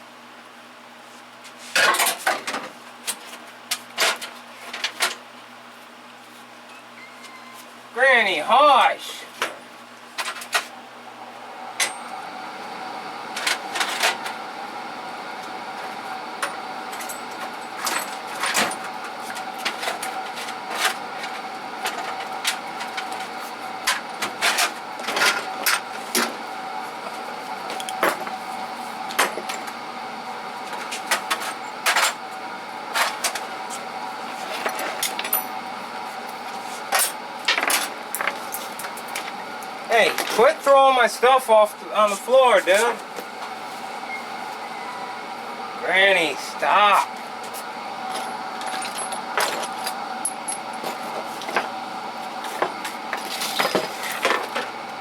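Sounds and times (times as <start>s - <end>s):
steady hum: 0.0s - 55.0s
metal tools clinking: 48.1s - 51.0s.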